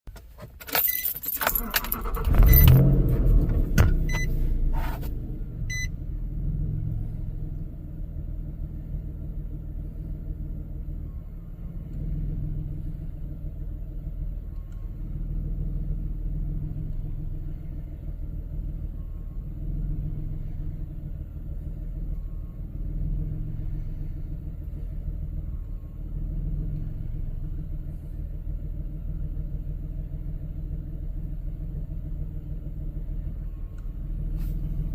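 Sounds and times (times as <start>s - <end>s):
car engine starting and idling: 0.1s - 34.9s.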